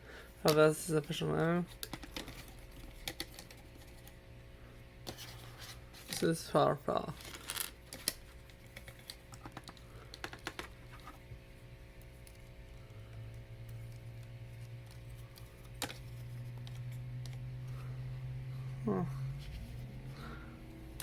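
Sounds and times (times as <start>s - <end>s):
low hum: 11.3s - 21.0s.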